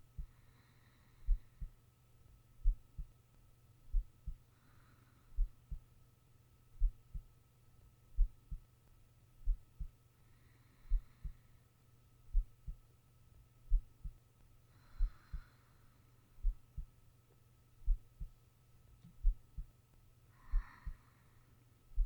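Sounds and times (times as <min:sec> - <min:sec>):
heartbeat thumps: 0:00.0 - 0:00.4, 0:01.3 - 0:01.8, 0:02.6 - 0:03.1, 0:03.9 - 0:04.4, 0:05.4 - 0:05.8, 0:06.8 - 0:07.3, 0:08.2 - 0:08.6, 0:09.4 - 0:09.9, 0:12.3 - 0:12.8, 0:13.7 - 0:14.2, 0:16.4 - 0:16.9, 0:17.8 - 0:18.4, 0:19.2 - 0:19.7, 0:20.5 - 0:21.0
soft breaths: 0:00.0 - 0:01.9, 0:03.9 - 0:06.0, 0:09.4 - 0:12.8, 0:13.7 - 0:17.0, 0:19.0 - 0:22.0
faint steady hum: 0:00.0 - 0:22.0.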